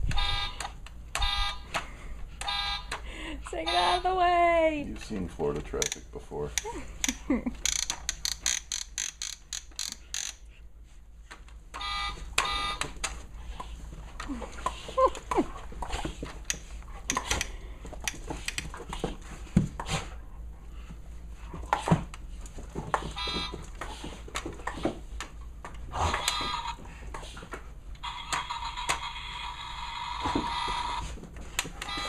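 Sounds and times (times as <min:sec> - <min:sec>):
toy horn honking: 0:00.1 - 0:01.6, 0:02.4 - 0:03.0, 0:03.6 - 0:04.0, 0:23.2 - 0:23.5.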